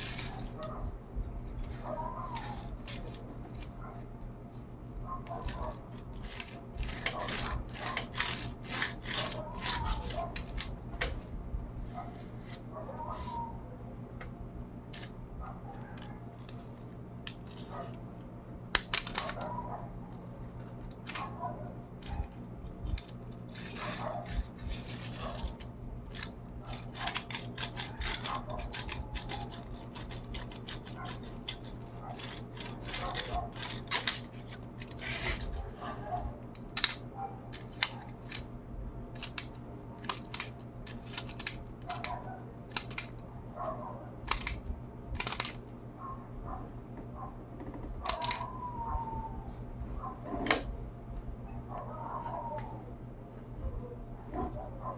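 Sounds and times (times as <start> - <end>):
toy truck clicks and rattles: 0.0 - 0.6, 1.6 - 3.7, 5.4 - 10.7, 14.9 - 15.2, 15.9 - 18.0, 18.7 - 19.5, 20.5 - 21.4, 22.0 - 38.5, 39.1 - 43.2, 44.2 - 45.6, 48.0 - 48.4
steady low hum: 0.0 - 54.9.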